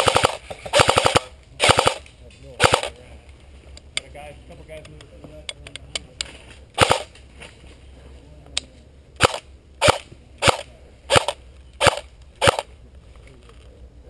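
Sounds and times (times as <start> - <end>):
airsoft gun shots: 0.0 - 2.0, 2.6 - 3.0, 6.8 - 7.1, 9.2 - 12.7.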